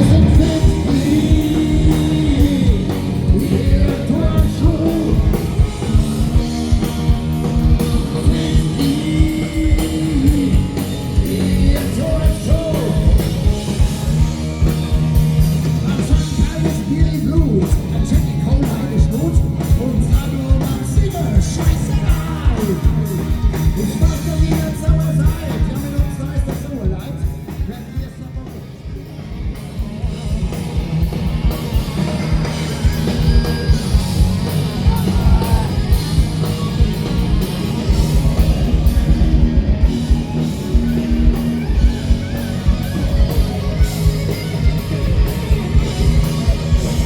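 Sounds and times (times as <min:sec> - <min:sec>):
person singing: 0:00.0 - 0:06.8, 0:07.8 - 0:13.8, 0:32.0 - 0:40.2
live rock band playing: 0:00.0 - 0:47.0
steady drum beat: 0:00.0 - 0:47.0.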